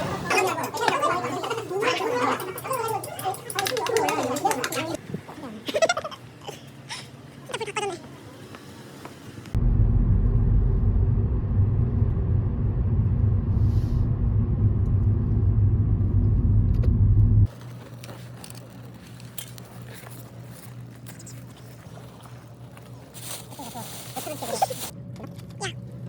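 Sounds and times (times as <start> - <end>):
engine-like rumble: 9.5 - 26.0
quiet low hum: 9.6 - 26.0.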